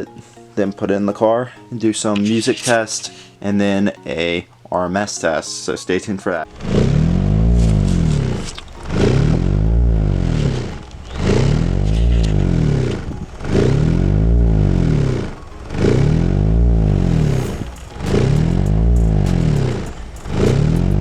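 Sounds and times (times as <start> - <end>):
subwoofer deep bass tone: 9.1 - 13.0, 13.7 - 15.3, 15.9 - 17.5, 18.1 - 19.8.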